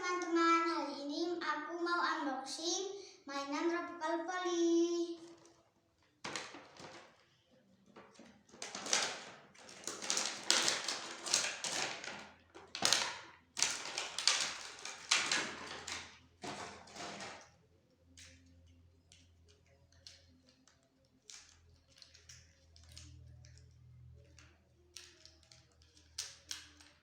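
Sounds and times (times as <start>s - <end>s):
toy packaging rustling: 5.1s - 7.3s, 8.0s - 17.4s.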